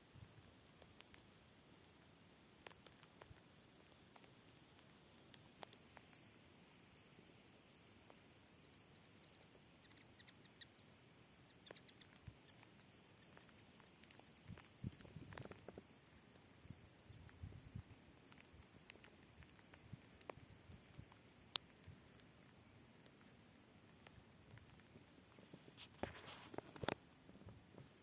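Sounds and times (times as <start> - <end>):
soft steady hiss: 0.0 - 28.0
raindrops ticking: 12.0 - 24.9.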